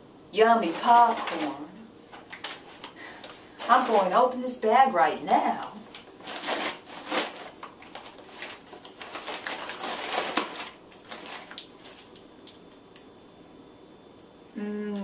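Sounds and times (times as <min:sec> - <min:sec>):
paper popcorn bag crinkling: 0:00.6 - 0:04.5, 0:05.5 - 0:12.8.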